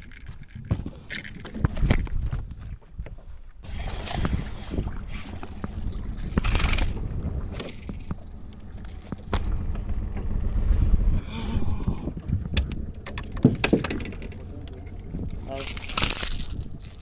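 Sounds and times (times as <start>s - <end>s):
wind rumble on microphone: 0.0s - 17.0s
knocks and scrapes: 3.7s - 17.0s.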